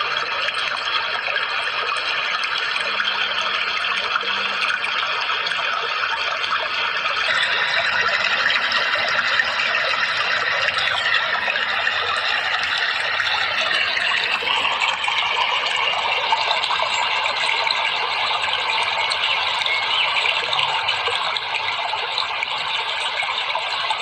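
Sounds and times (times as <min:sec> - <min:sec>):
running water: 0:00.0 - 0:24.0
thin steady tone: 0:00.0 - 0:24.0.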